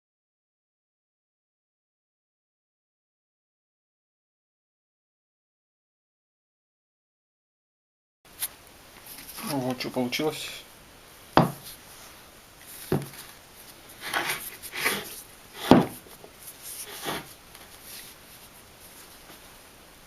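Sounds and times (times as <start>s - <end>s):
hard parts knocking on workbench: 11.4s - 11.6s, 12.9s - 13.2s, 14.0s - 16.0s
scraping on workbench: 12.8s - 13.2s, 14.0s - 16.1s, 16.7s - 17.3s.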